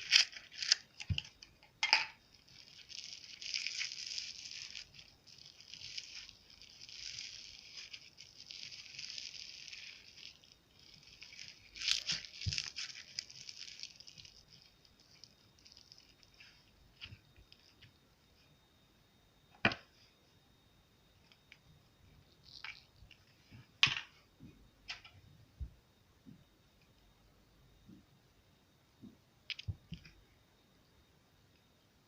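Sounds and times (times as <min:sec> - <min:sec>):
slime crackling and popping: 0:00.0 - 0:01.6, 0:02.2 - 0:17.2.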